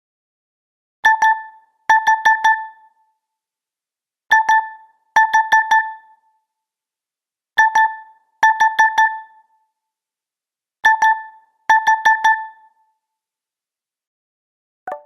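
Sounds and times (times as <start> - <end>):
electronic phone beeps: 1.1 - 2.8, 4.3 - 6.1, 7.6 - 9.4, 10.9 - 12.7.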